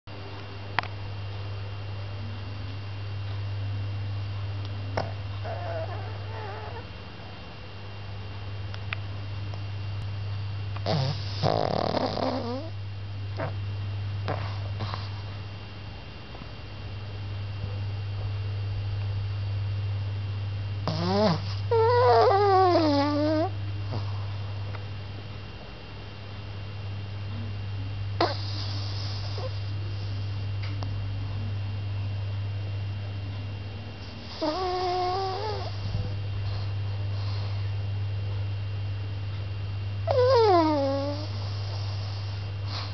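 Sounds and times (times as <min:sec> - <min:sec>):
steady low hum: 0:00.1 - 0:42.9
dog snoring with squeaky whines: 0:04.9 - 0:07.4, 0:10.8 - 0:13.6, 0:14.2 - 0:15.4, 0:20.8 - 0:24.5, 0:28.2 - 0:30.3, 0:34.0 - 0:37.7, 0:40.0 - 0:42.9.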